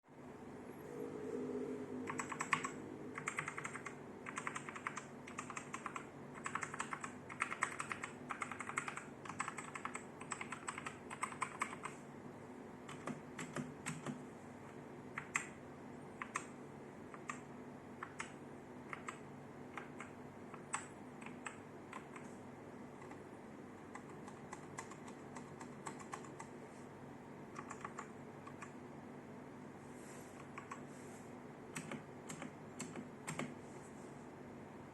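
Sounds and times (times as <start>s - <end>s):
typing on mechanical keyboard: 2.0s - 12.0s, 12.9s - 14.2s, 15.2s - 15.6s, 16.2s - 16.5s, 18.0s - 22.3s, 23.9s - 26.6s, 27.5s - 28.8s, 31.7s - 33.6s.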